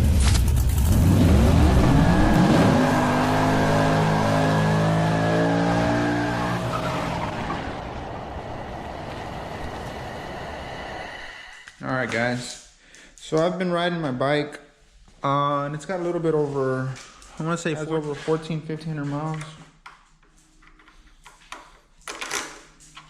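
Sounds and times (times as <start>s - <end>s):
vehicle engine revving: 0.0s - 10.5s.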